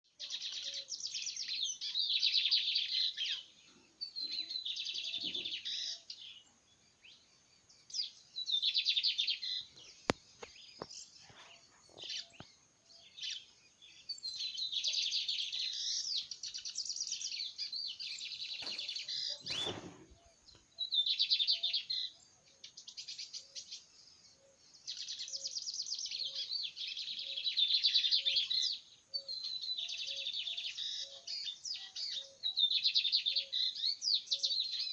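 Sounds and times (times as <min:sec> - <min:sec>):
songbird rapid trilled song: 0:00.3 - 0:23.6.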